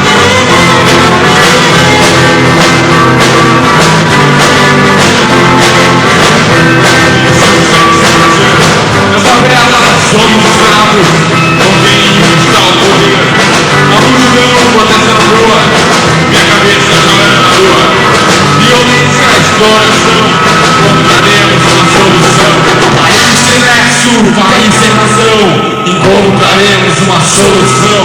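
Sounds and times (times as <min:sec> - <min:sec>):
live rock band playing: 0:00.0 - 0:28.0.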